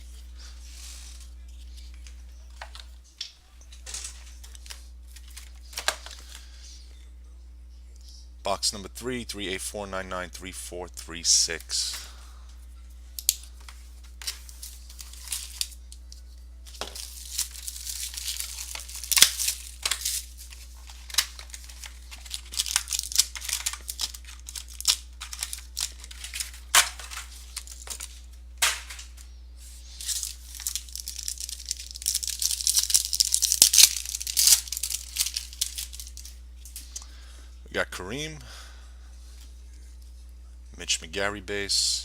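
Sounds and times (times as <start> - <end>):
plastic wrapping crinkling: 13.3 - 15.9, 16.7 - 28.2, 29.8 - 37.0.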